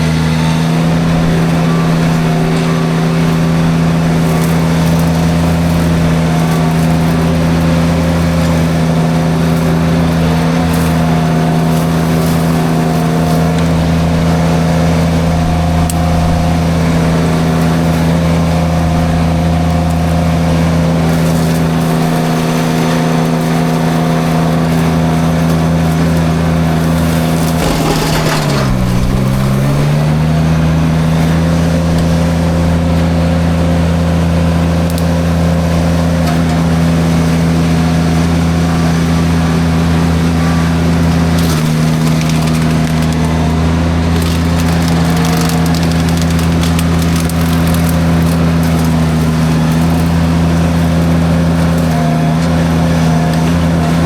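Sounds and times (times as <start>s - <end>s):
mulcher chewing brush: 0.0s - 54.0s
skid steer engine running: 0.0s - 54.0s.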